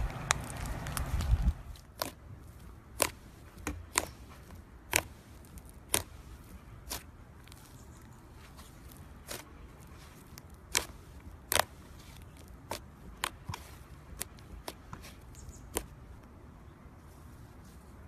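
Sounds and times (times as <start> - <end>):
slime clicking and popping: 2.9 - 4.2, 4.9 - 6.2, 10.3 - 15.1.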